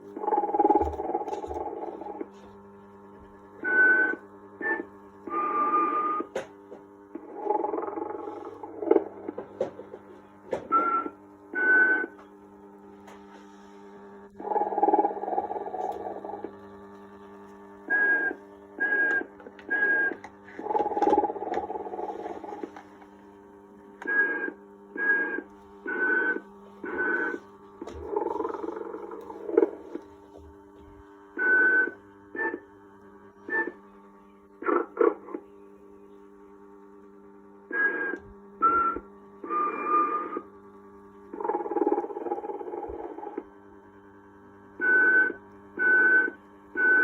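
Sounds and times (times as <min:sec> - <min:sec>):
steady hum: 0:00.0 - 0:47.0
toy whistling snores: 0:24.1 - 0:27.4, 0:37.7 - 0:40.4, 0:44.8 - 0:47.0.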